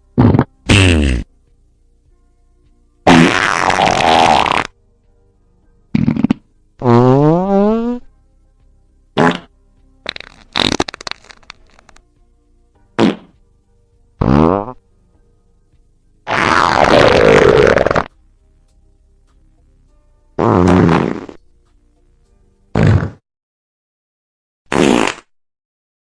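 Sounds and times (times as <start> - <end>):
farts: 0.2 - 1.3, 3.0 - 4.7, 5.9 - 8.1, 9.2 - 12.0, 13.0 - 13.4, 14.2 - 14.8, 16.3 - 18.1, 20.4 - 21.4, 22.7 - 23.2, 24.7 - 25.4.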